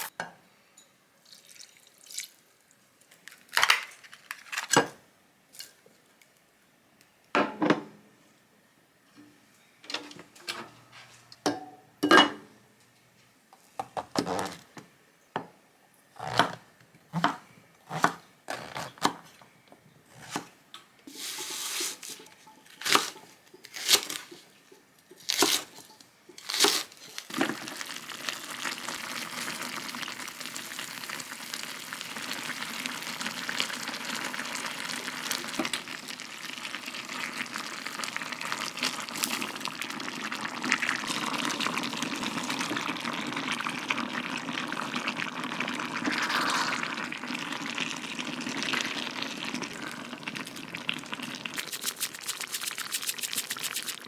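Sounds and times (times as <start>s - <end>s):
tap water running: 49.6s - 54.0s.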